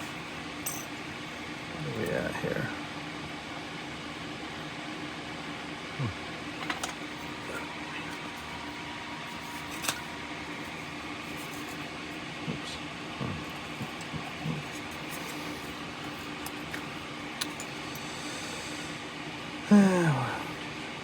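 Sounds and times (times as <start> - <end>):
room hum: 0.0 - 21.0.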